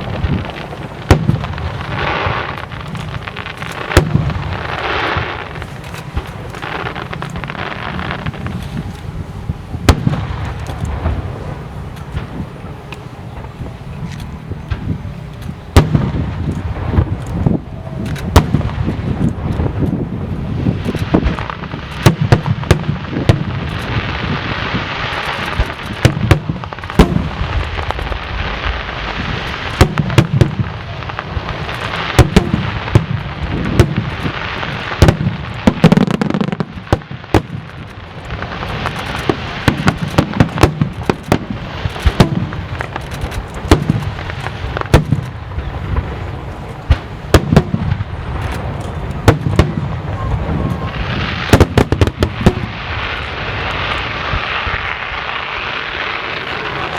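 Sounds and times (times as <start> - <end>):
firework bangs: 0.0 - 56.9
fireworks crackling hiss: 0.0 - 56.9.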